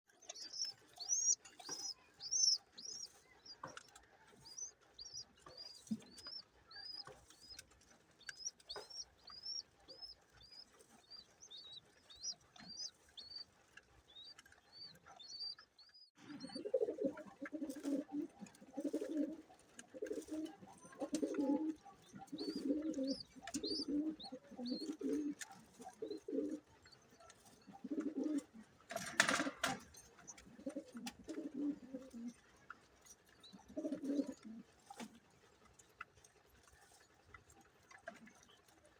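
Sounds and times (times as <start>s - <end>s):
pigeon chicks peeping: 0.1s - 38.9s
pigeon cooing: 16.2s - 26.7s, 27.6s - 29.6s, 30.6s - 32.4s, 33.6s - 34.7s.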